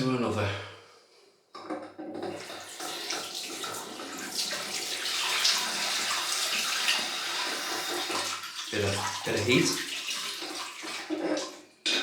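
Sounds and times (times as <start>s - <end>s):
tap running into sink: 2.2s - 11.6s.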